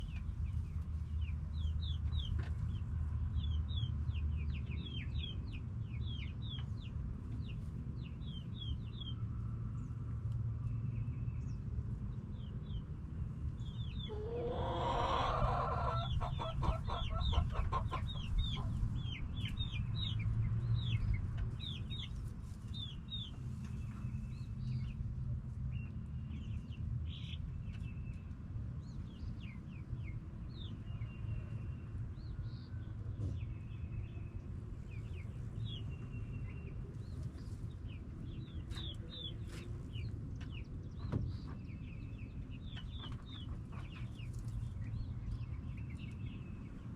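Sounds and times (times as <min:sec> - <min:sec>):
low continuous rumble: 0:00.0 - 0:46.9
hen squawk: 0:14.1 - 0:17.9
hens clucking: 0:14.1 - 0:18.9.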